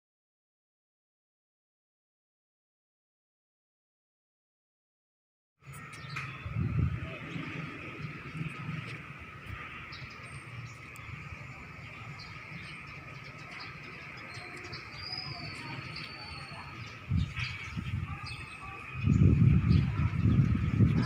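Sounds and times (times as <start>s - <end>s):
bird chirps: 5.6s - 8.7s, 9.6s - 21.0s
low rumble: 5.7s - 14.3s
whistled bird call: 13.5s - 18.9s.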